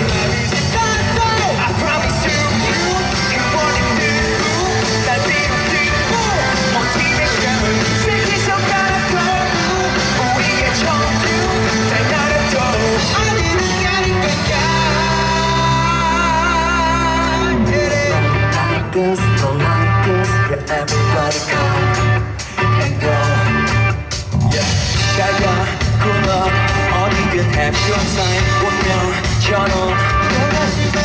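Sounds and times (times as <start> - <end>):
live rock band playing: 0.0 - 31.0
person singing: 0.0 - 31.0
ringing guitar chords: 0.0 - 31.0.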